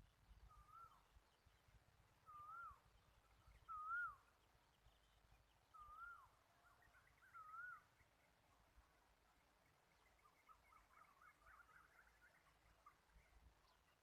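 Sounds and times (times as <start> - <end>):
faint bird chirps: 0.0 - 14.0
bird whistling: 2.3 - 2.8, 3.7 - 4.2.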